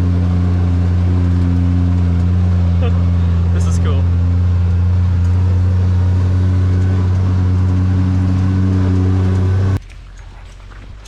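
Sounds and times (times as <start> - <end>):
vehicle engine droning: 0.0 - 9.9.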